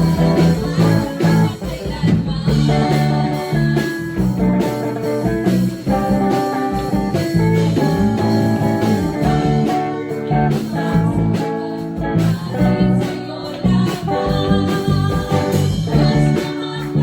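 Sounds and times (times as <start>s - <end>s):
bass line: 0.0s - 17.0s
worship music on guitar: 0.0s - 17.0s.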